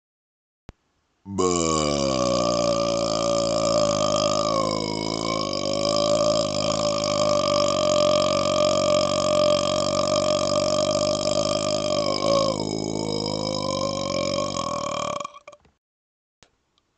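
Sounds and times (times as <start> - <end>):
man's long burp: 1.3 - 15.6.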